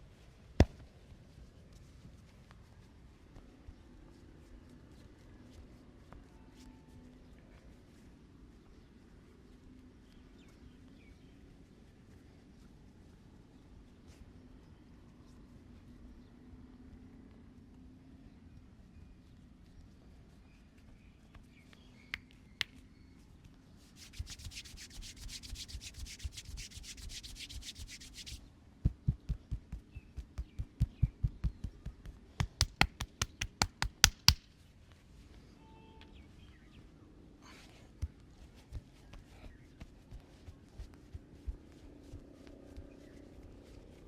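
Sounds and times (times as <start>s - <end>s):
hands rubbing skin: 23.8s - 34.5s
rhythmic hand strikes on skin: 24.0s - 34.5s
light hand taps: 24.1s - 34.5s.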